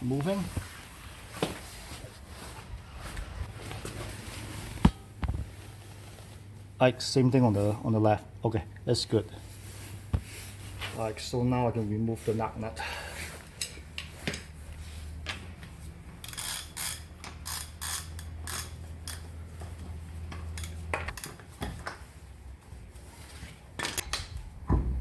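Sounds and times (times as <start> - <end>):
ratchet clicking: 16.2 - 19.3.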